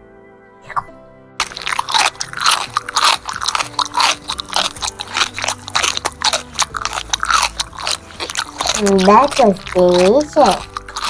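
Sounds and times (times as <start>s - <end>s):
crunchy chewing: 0.7s - 11.0s.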